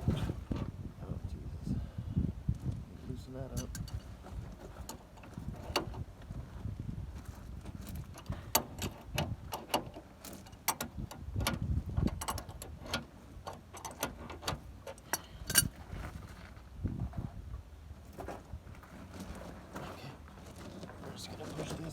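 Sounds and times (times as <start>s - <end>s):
wrench clicking and knocking on bolt: 8.2s - 15.7s.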